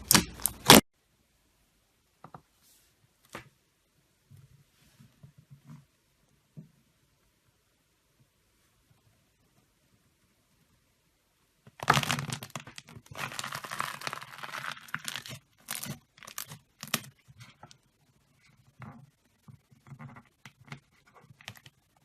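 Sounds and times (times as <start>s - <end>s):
slime crackling and popping: 0.0s - 0.8s, 11.8s - 17.3s.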